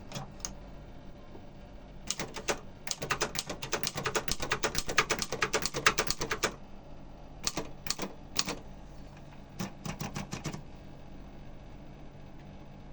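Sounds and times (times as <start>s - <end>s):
typewriter keystrokes: 0.0s - 0.6s, 2.1s - 6.6s, 7.4s - 8.7s, 9.6s - 10.6s.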